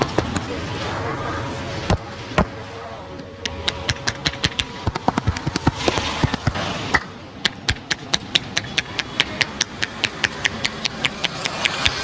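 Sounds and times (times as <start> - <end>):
rapid rhythmic hand slaps: 7.4 - 12.0.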